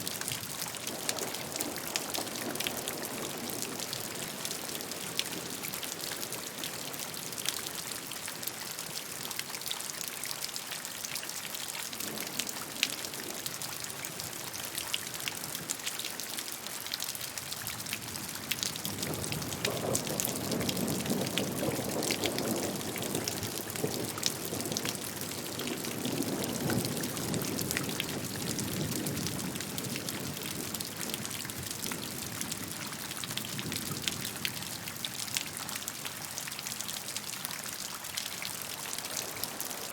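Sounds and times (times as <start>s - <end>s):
rain falling: 0.0s - 39.9s.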